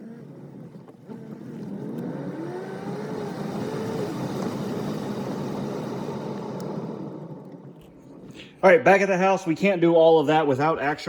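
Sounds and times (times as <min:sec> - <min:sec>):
car engine accelerating: 0:00.0 - 0:08.8.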